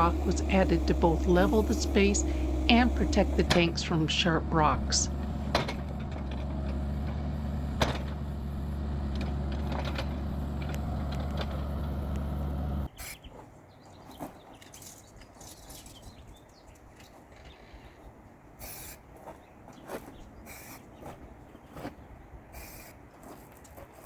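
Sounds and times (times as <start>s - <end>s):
heavy machinery engine running: 0.0s - 12.9s.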